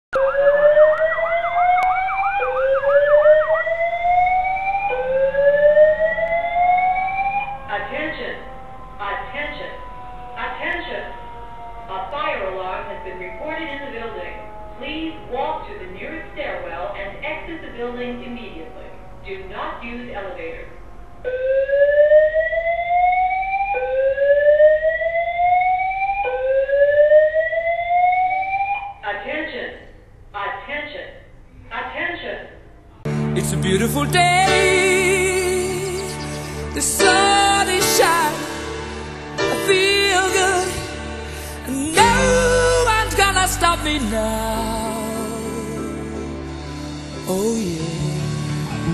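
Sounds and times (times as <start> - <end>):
fire alarm whoop tone: 0.2 - 17.2, 20.6 - 29.0
fast warbling alarm tone: 0.2 - 29.0.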